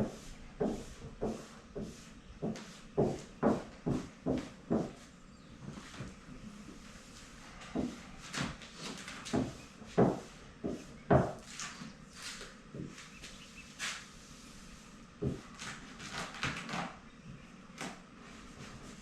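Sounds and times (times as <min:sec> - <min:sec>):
knocks and thumps: 0:09.2 - 0:11.4, 0:15.2 - 0:15.5.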